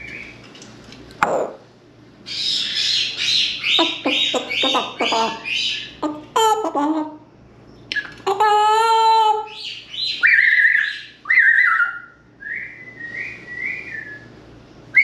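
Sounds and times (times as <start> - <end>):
parrot calling: 2.3 - 7.2, 7.9 - 12.7
parrot whistling: 9.5 - 14.3.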